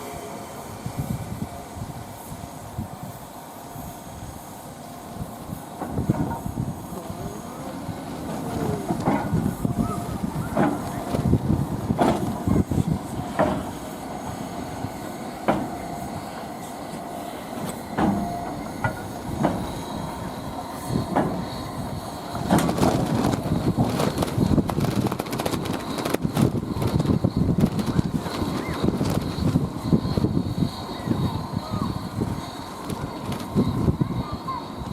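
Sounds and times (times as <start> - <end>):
railway cars knocking and clanking: 0.0 - 34.9
rapid clicking and knocking: 22.4 - 29.6.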